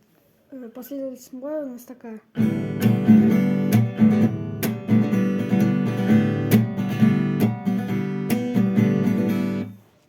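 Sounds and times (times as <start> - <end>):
acoustic guitar strumming: 2.3 - 9.8.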